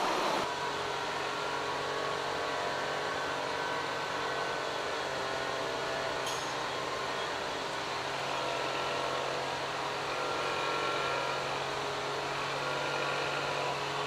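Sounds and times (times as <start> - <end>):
road noise: 0.0 - 0.5.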